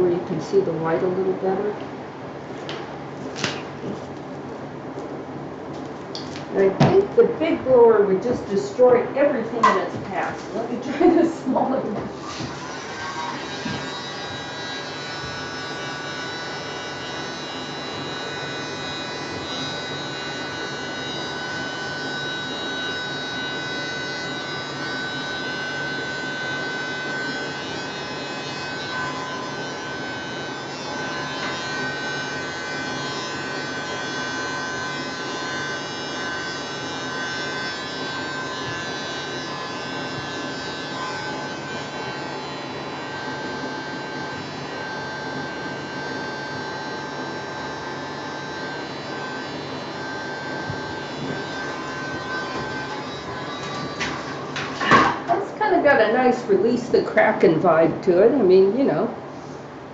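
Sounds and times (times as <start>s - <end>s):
small electric blower whining: 5.7s - 57.0s.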